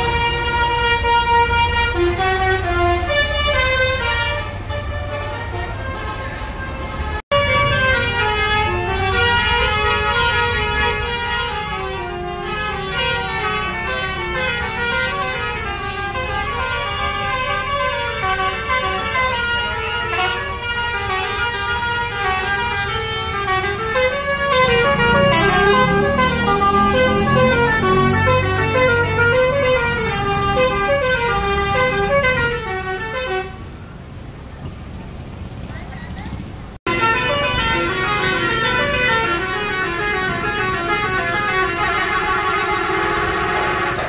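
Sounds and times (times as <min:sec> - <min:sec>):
bus horn playing a melody: 0:00.0 - 0:33.8, 0:36.8 - 0:44.0
low engine rumble: 0:06.8 - 0:44.0.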